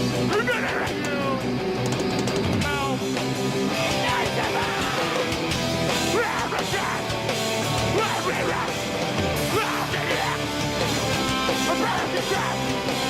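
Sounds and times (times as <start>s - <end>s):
loud electric guitars: 0.0s - 13.0s.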